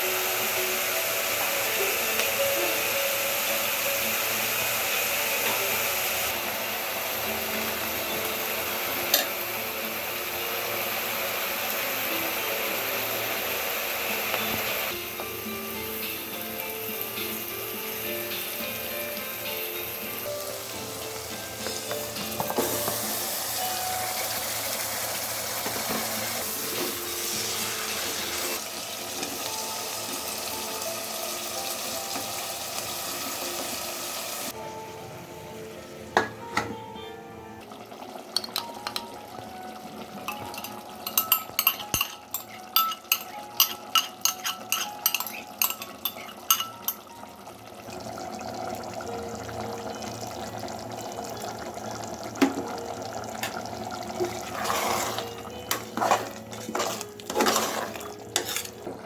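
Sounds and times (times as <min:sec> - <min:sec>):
food sizzling in hot oil: 0:00.0 - 0:34.6, 0:37.8 - 0:59.0
spoon scraping a pot: 0:40.3 - 0:47.0, 0:54.2 - 0:59.0.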